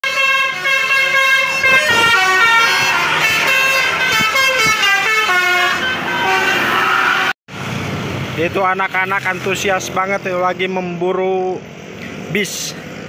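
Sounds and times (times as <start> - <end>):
multi-tone air horn tune: 0.0 - 7.4.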